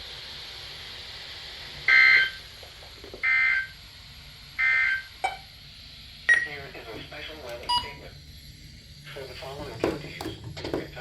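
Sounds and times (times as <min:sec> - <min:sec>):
faint radio hiss: 0:06.1 - 0:11.0.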